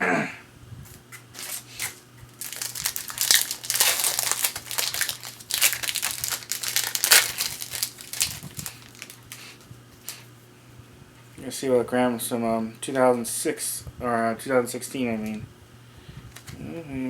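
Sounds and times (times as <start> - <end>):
foil wrapper crinkling: 1.3 - 10.2.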